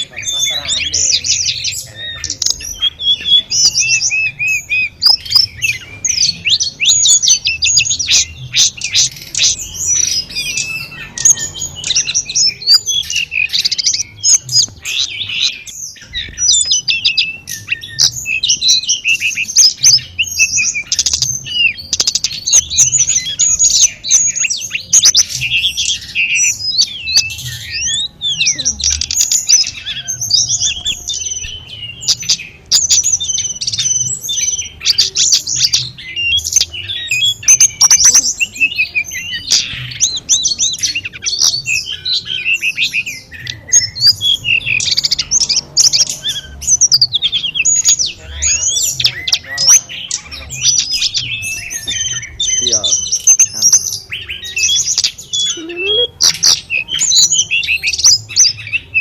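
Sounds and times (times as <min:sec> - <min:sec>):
bird singing: 0:00.0 - 0:59.0.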